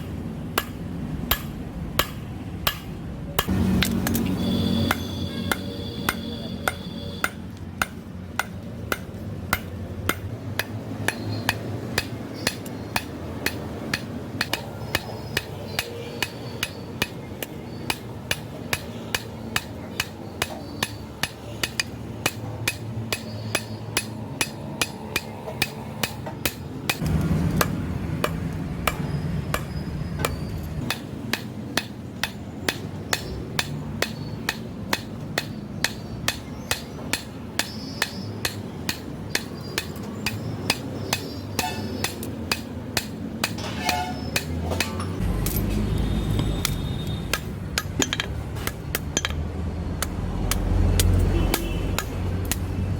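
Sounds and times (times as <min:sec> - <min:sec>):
hammer striking steel on anvil: 0:00.0 - 0:52.7.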